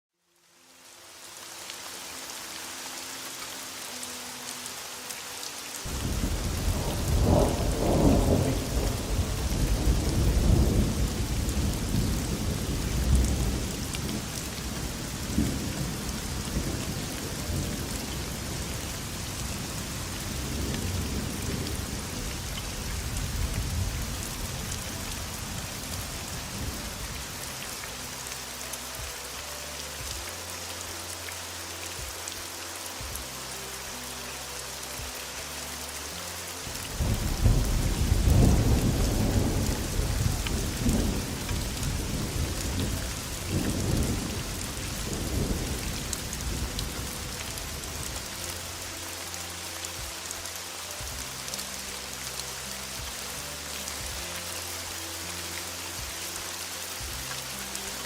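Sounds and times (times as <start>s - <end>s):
heavy rain hissing: 0.2s - 58.0s
rolling thunder: 5.9s - 18.3s, 37.0s - 47.0s.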